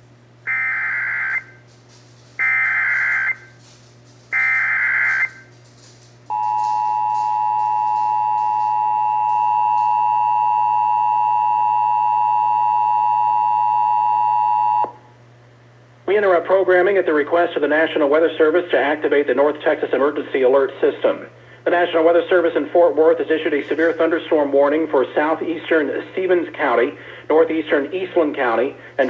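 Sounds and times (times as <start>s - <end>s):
warbling data tones: 2.4s - 3.6s, 4.4s - 5.5s
two-tone attention signal: 6.3s - 14.9s.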